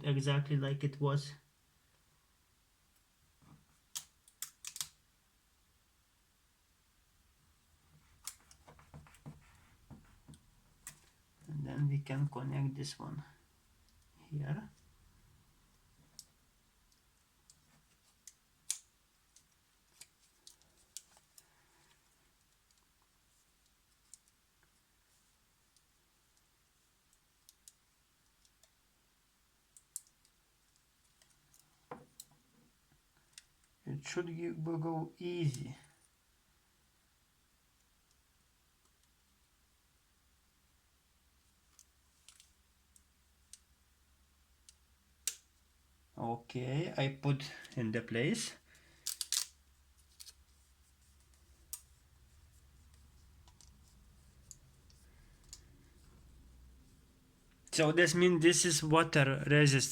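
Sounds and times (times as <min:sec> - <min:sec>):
small clicks and taps of tools: 0:03.0 - 0:05.0, 0:29.7 - 0:32.4, 0:33.2 - 0:33.8, 0:41.7 - 0:43.7
low steady hum: 0:49.6 - 0:59.9.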